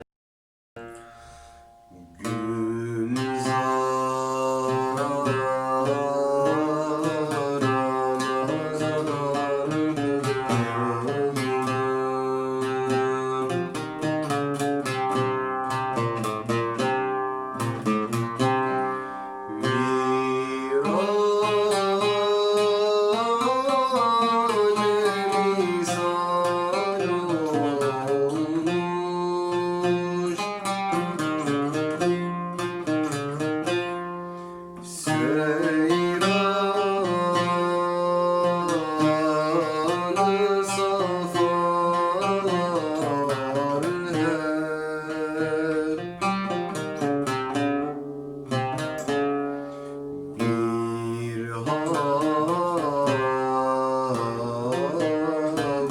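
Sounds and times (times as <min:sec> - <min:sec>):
plucked string instrument: 0:00.8 - 0:55.9
solo voice singing: 0:01.9 - 0:14.0, 0:19.5 - 0:30.6, 0:34.8 - 0:46.3, 0:50.3 - 0:55.9.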